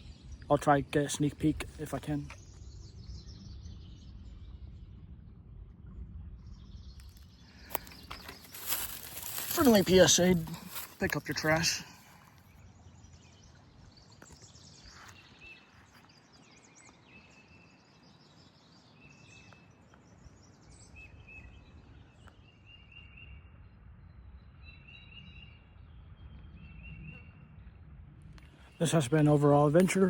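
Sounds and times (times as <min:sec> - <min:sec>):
low steady rumble: 0:00.0 - 0:11.5, 0:23.2 - 0:30.0.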